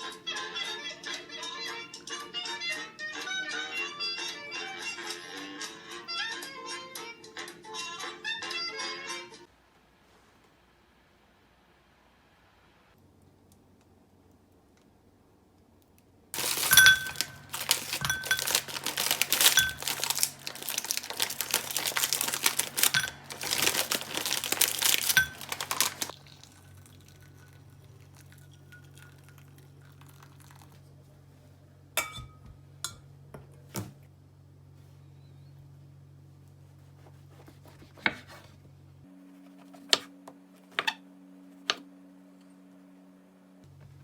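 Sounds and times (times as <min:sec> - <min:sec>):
low steady hum: 0:09.5 - 0:44.0
light clinks: 0:16.4 - 0:20.2
packaging crinkling: 0:16.4 - 0:26.5.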